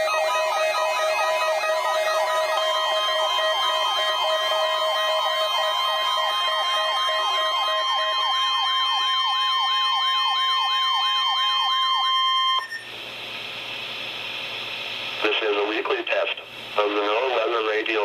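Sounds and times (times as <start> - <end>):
warbling siren: 0.0 - 12.9
steady warning tone: 0.0 - 13.1
radio static hiss: 12.9 - 18.0.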